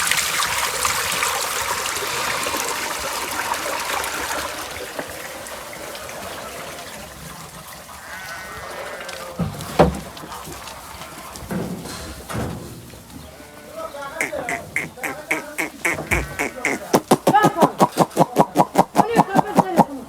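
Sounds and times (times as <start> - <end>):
water trickling and splashing: 0.0 - 20.0
sheep bleating: 8.0 - 9.4, 13.4 - 17.0.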